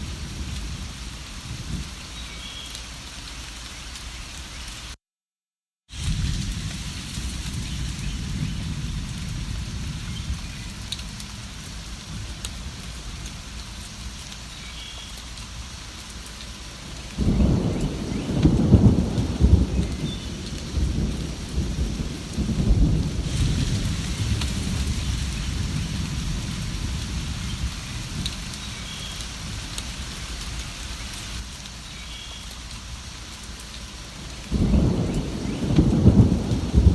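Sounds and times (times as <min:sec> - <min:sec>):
low rumble of thunder: 0:00.0 - 0:02.0, 0:06.0 - 0:14.1, 0:16.8 - 0:31.4, 0:34.1 - 0:36.9
steady rain falling: 0:00.0 - 0:05.0, 0:05.9 - 0:36.9.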